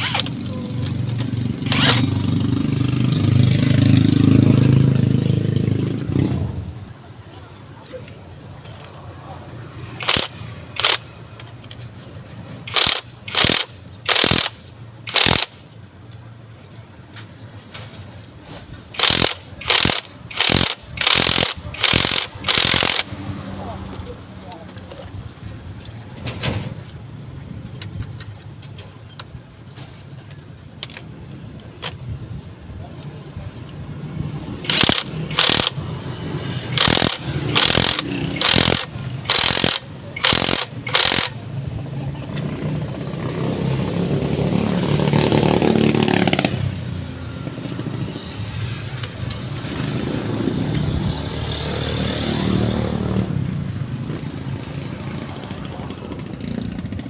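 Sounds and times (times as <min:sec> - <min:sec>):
loud mechanical bursts: 0:00.0 - 0:00.4, 0:01.5 - 0:03.0, 0:10.0 - 0:11.1, 0:12.7 - 0:15.7, 0:18.9 - 0:23.2, 0:34.6 - 0:41.5
vehicle engine passing: 0:00.0 - 0:07.0, 0:34.1 - 0:57.0.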